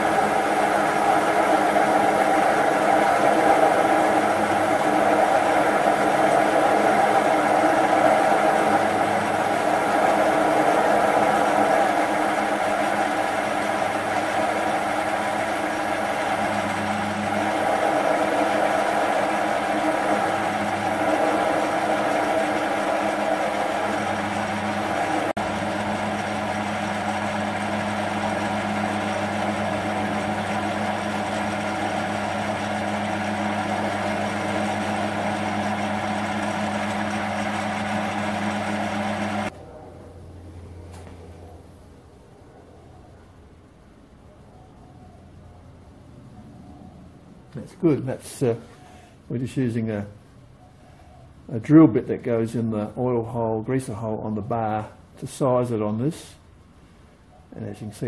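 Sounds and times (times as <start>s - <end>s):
lathe motor hum: 0.0s - 39.6s.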